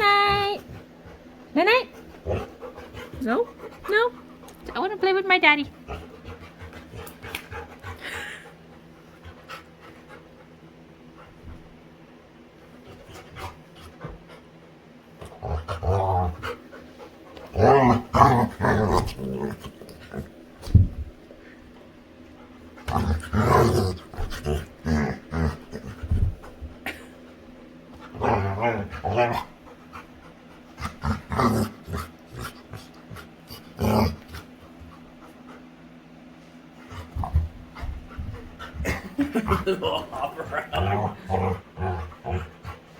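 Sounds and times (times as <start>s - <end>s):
dog grumbling: 2.2s - 3.6s, 15.2s - 16.7s, 17.4s - 20.7s, 22.8s - 27.0s, 28.0s - 29.7s, 30.8s - 34.5s, 38.6s - 42.8s.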